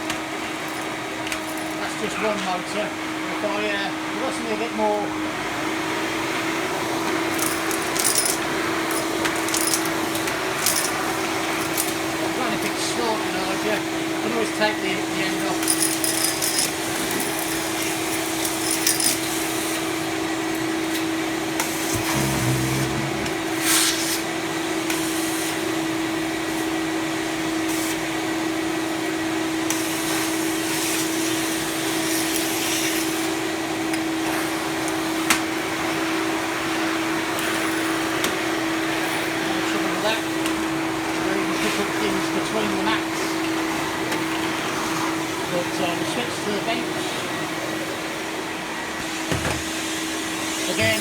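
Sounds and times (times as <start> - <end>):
wet and dry vacuum running: 0.0 - 51.0.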